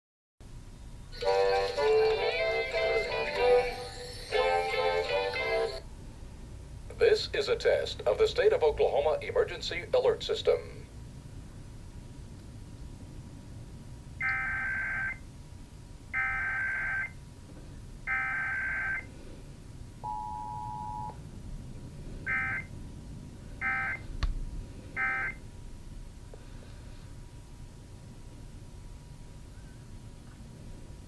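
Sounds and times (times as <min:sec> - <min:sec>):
two-tone attention signal: 0:14.2 - 0:15.2, 0:20.0 - 0:21.2, 0:22.3 - 0:22.7.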